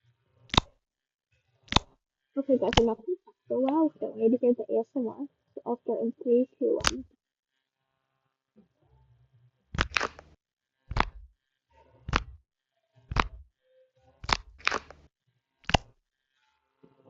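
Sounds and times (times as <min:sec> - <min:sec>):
squishy toy squeezed: 0:09.8 - 0:10.2, 0:14.2 - 0:15.0.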